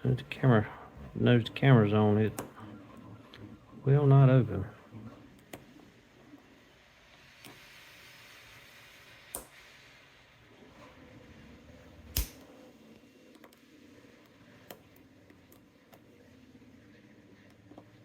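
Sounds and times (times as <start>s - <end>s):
sharp lock clicks: 12.2s - 12.4s.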